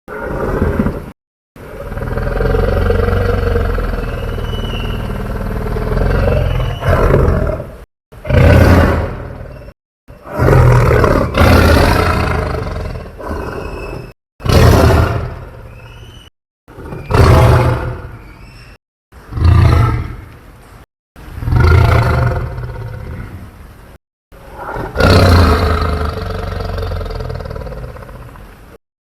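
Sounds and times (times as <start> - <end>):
deep dinosaur roars: 0.1 - 9.6, 10.2 - 15.5, 16.7 - 18.1, 24.5 - 28.3.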